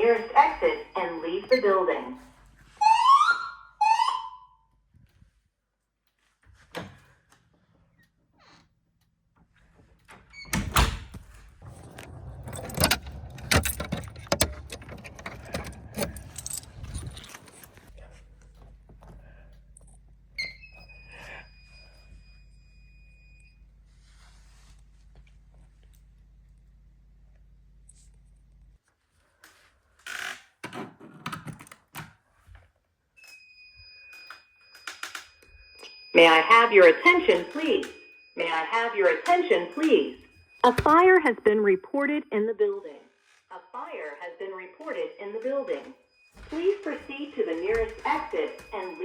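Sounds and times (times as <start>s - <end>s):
high-pitched smoke alarm tone: 0.0s - 2.2s, 2.8s - 4.6s, 20.4s - 23.6s, 33.2s - 42.6s, 43.5s - 49.0s
rattling handling noise: 11.6s - 17.9s.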